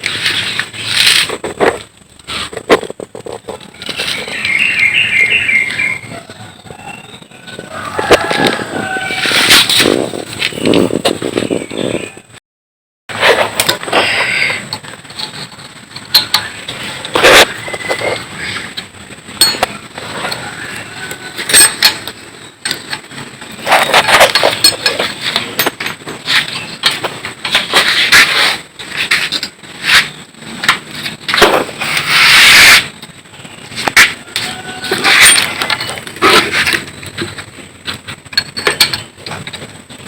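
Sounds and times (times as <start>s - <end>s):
hand tools clinking on metal parts: 19.4s - 31.4s, 33.8s - 39.8s.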